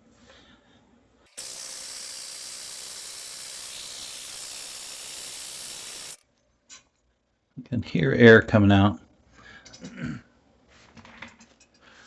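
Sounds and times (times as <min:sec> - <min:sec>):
air hissing from engine: 0:01.3 - 0:06.2.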